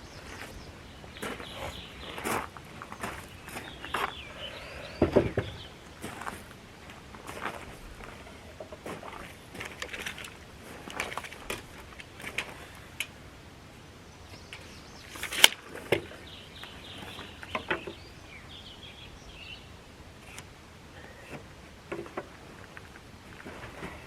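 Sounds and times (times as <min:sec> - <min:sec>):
lumber and tools knocking: 0:05.0 - 0:05.6.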